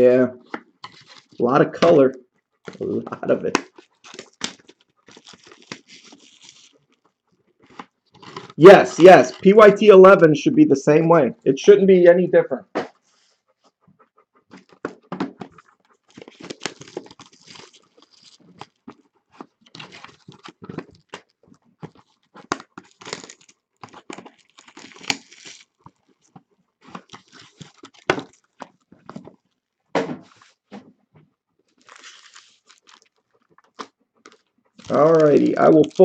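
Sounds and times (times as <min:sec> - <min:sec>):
clicks and rustles of handling: 0:00.4 - 0:09.7, 0:14.4 - 0:36.0
packaging crinkling and tearing: 0:00.5 - 0:09.7, 0:15.4 - 0:29.6, 0:31.7 - 0:36.0.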